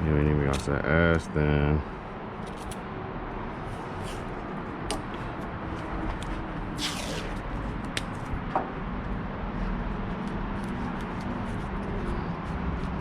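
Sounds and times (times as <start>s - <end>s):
steady background hum: 0.0s - 13.0s
masking tape ripping off roll: 6.7s - 7.6s.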